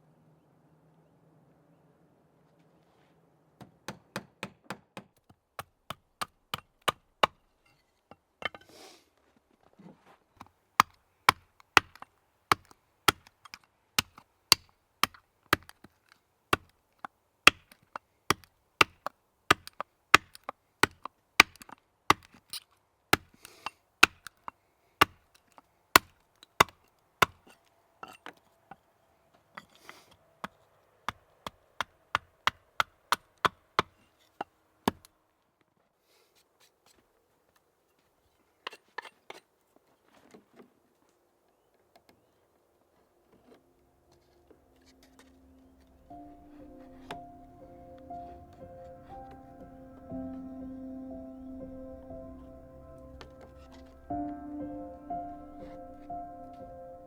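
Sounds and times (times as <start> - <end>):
hand tool striking wood: 3.6 - 7.4, 10.4 - 15.8, 17.5 - 22.4, 23.2 - 25.2, 26.0 - 28.2, 44.8 - 49.4, 55.6 - 56.0.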